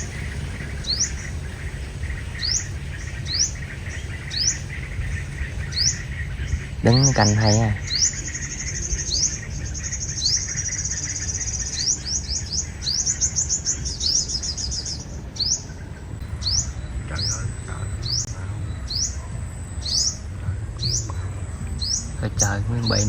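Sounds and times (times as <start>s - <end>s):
birds chirping: 0.0s - 23.0s.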